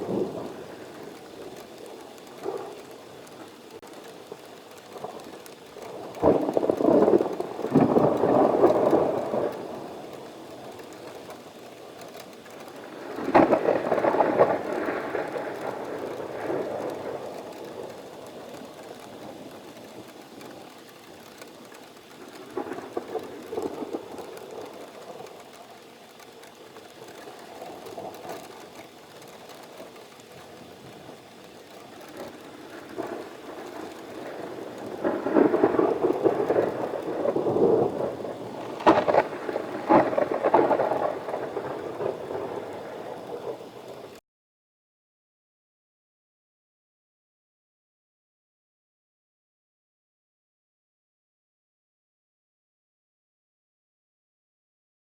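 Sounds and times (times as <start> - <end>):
steady rain: 0.0 - 44.2
rolling thunder: 6.0 - 11.6, 12.8 - 20.0, 32.3 - 44.1
sharp thunder crack: 34.2 - 43.4.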